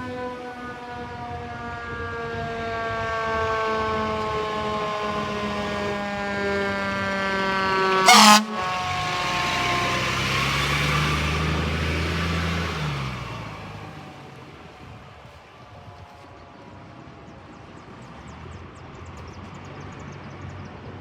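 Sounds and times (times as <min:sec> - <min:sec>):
air horn blast: 0:03.1 - 0:09.2.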